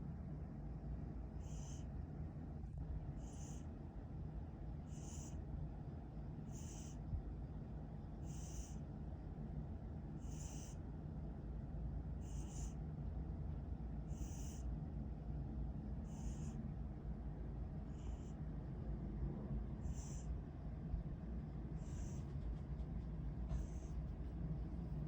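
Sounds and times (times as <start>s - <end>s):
low steady rumble: 0.0s - 25.0s
cat snoring: 1.4s - 1.8s, 4.9s - 5.4s, 6.5s - 7.0s, 8.2s - 8.8s, 10.2s - 10.8s, 12.2s - 12.8s, 14.1s - 14.7s, 16.0s - 16.6s, 19.8s - 20.3s.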